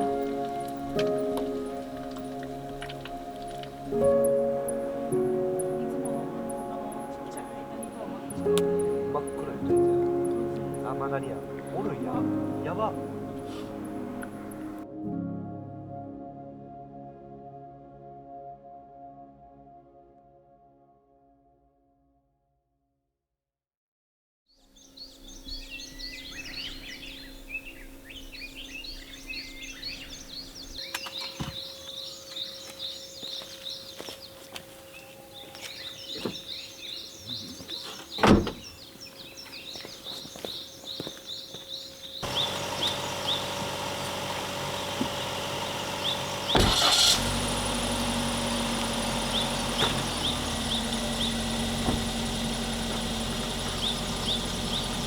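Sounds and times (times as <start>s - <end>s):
birds chirping: 0.0s - 14.8s, 24.8s - 55.0s
car engine and road noise: 0.0s - 14.8s, 42.1s - 55.0s.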